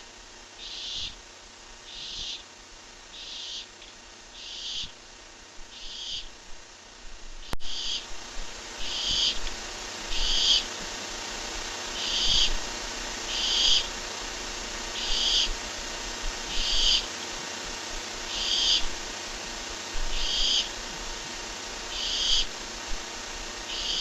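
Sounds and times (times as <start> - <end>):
microphone hiss and hum: 0.0 - 24.0
barn owl hissing screech: 0.6 - 1.2, 1.9 - 2.4, 3.2 - 3.7, 4.4 - 4.9, 5.7 - 6.3, 7.7 - 8.1, 8.8 - 9.4, 10.1 - 10.7, 11.9 - 12.6, 13.2 - 14.0, 15.0 - 15.6, 16.5 - 17.1, 18.3 - 19.0, 20.1 - 20.8, 21.9 - 22.5, 23.7 - 24.0.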